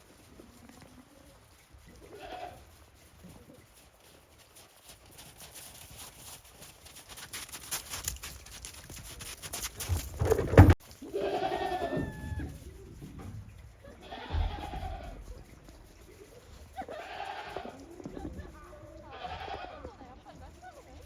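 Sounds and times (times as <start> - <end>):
goats bleating: 2.0 - 2.7, 11.0 - 12.6, 13.9 - 15.4, 16.8 - 20.5.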